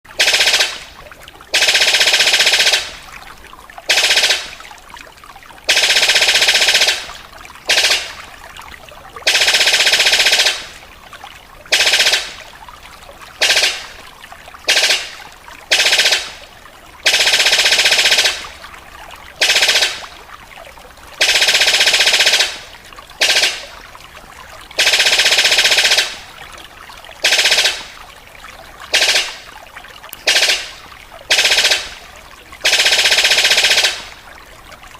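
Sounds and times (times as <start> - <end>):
rattling bird calls: 5.7 - 8.2, 13.4 - 14.0, 28.9 - 29.4, 30.1 - 32.0, 32.6 - 34.2.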